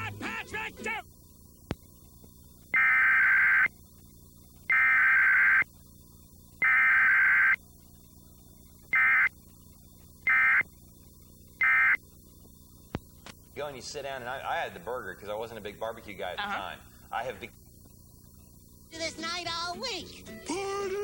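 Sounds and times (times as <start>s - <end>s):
digital data bursts: 2.7s - 3.8s, 4.7s - 5.7s, 6.6s - 7.6s, 8.9s - 9.4s, 10.3s - 10.7s, 11.6s - 12.0s.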